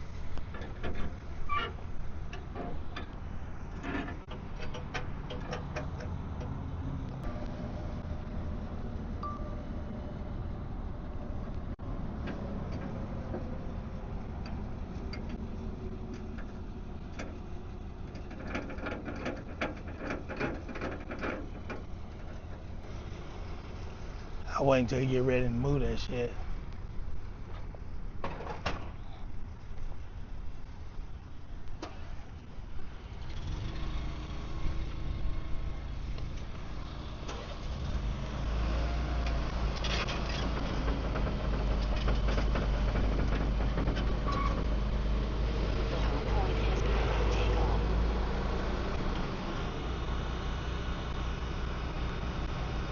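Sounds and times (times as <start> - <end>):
low engine rumble: 0.0 - 52.9
clicks and rattles: 18.1 - 22.7.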